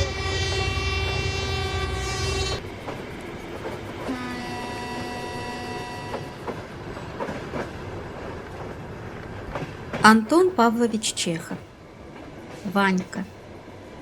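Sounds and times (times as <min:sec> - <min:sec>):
train horn: 0:00.0 - 0:02.7, 0:04.0 - 0:06.7
train wheels clacking on rails: 0:00.0 - 0:12.6.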